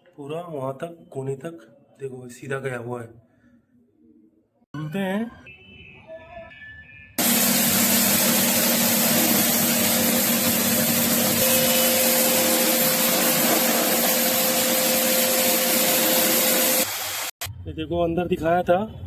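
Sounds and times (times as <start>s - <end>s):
high steady tone: 7.2s - 16.9s.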